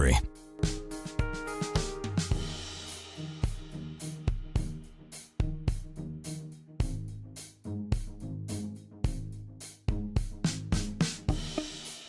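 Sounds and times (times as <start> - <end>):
bass line: 0.0 - 0.3.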